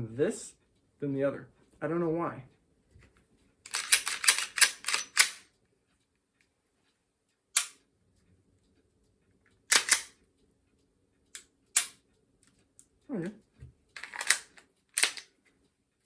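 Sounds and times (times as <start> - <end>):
pistol slide metallic clacks: 3.7 - 5.5, 7.6 - 7.8, 9.7 - 10.2, 11.4 - 12.0, 14.0 - 15.4.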